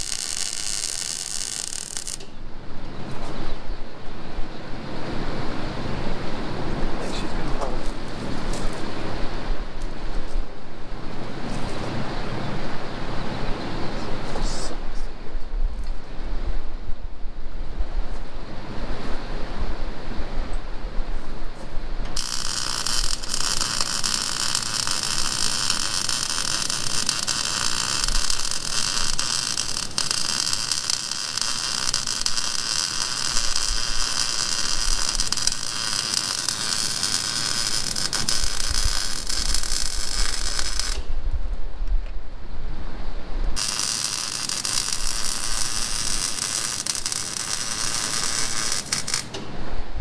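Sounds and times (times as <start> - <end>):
welding arc crackling and hissing: 0.0 - 2.3, 22.2 - 41.1, 43.6 - 49.4.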